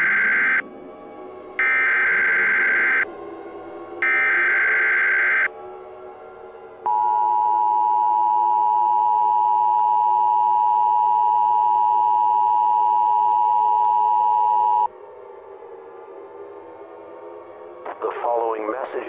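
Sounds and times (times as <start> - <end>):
two-tone alert signal: 0.0 - 0.6, 1.6 - 3.1, 4.0 - 5.5.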